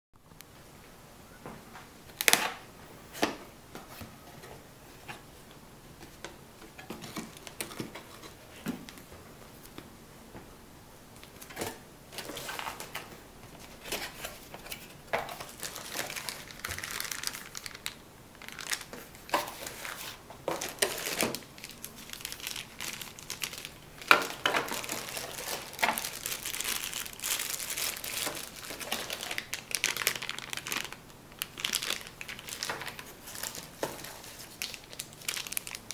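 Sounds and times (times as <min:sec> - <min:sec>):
plastic and paper crinkling: 0:11.2 - 0:35.9
packaging tearing: 0:15.3 - 0:35.9.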